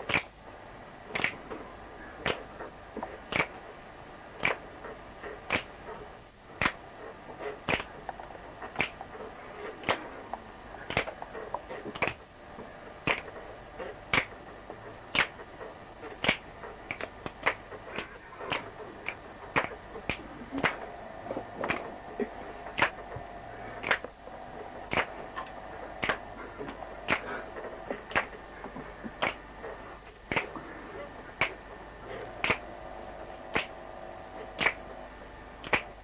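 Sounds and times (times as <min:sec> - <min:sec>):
sharp percussive clicks: 0:00.1 - 0:00.3, 0:01.1 - 0:01.5, 0:03.0 - 0:03.6, 0:04.4 - 0:04.7, 0:05.4 - 0:06.0, 0:06.6 - 0:06.8, 0:07.6 - 0:12.2, 0:13.0 - 0:20.9, 0:21.6 - 0:23.2, 0:23.8 - 0:30.6, 0:31.3 - 0:31.6, 0:32.4 - 0:32.7, 0:33.5 - 0:33.8, 0:34.5 - 0:34.9, 0:35.6 - 0:36.0.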